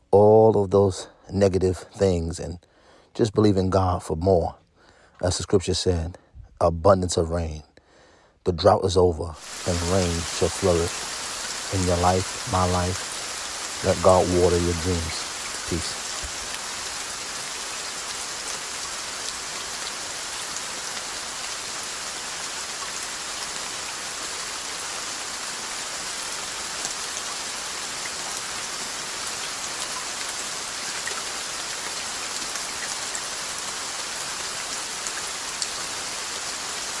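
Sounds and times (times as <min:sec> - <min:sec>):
steady rain falling: 0:09.2 - 0:37.0.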